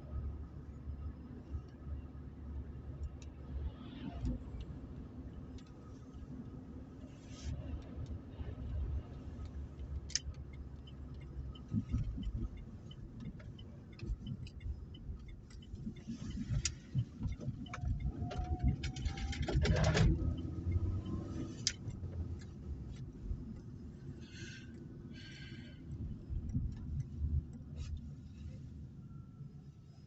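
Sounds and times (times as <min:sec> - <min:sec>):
car interior rumble: 0:00.0 - 0:30.0
clicks and knocks from wheel: 0:10.0 - 0:23.8.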